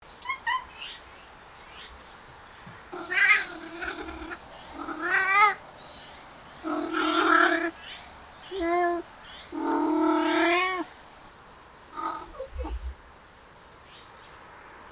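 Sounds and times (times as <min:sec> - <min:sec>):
cat yowling: 0:03.0 - 0:05.6, 0:06.6 - 0:07.8, 0:08.5 - 0:10.9, 0:12.0 - 0:12.8.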